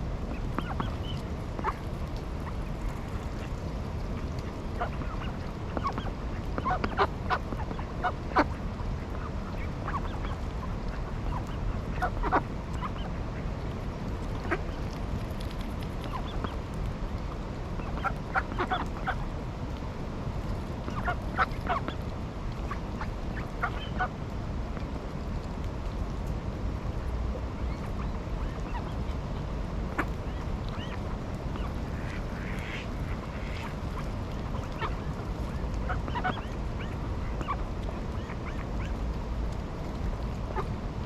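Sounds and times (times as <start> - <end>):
low background noise: 0.0 - 41.0
ducks honking and quacking: 9.2 - 13.2, 17.8 - 19.2, 22.7 - 24.1, 29.9 - 39.0.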